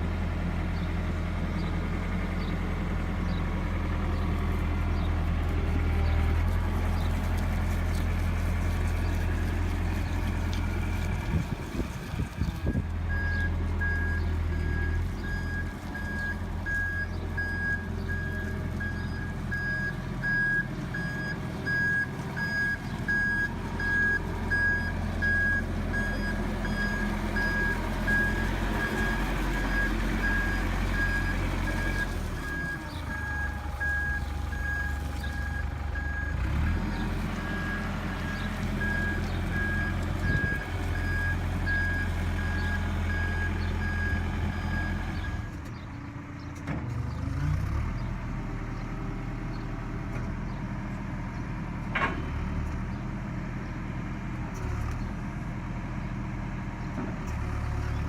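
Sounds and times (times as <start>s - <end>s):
heavy machine engine running: 0.0s - 58.0s
reversing alarm beeping: 12.7s - 36.4s, 37.4s - 45.5s.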